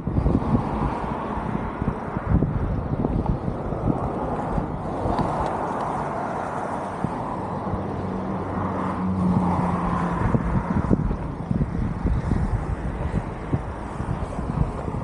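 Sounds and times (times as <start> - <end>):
wheels rattling on pavement: 0.0 - 15.0
wind on microphone: 0.0 - 15.0.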